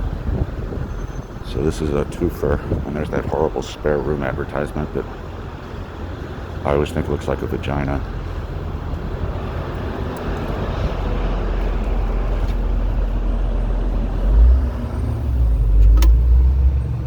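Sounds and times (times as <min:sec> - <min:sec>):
city street traffic: 0:00.0 - 0:17.0
heavy vehicle rumbling past: 0:00.0 - 0:17.0
sharp click: 0:15.8 - 0:16.2.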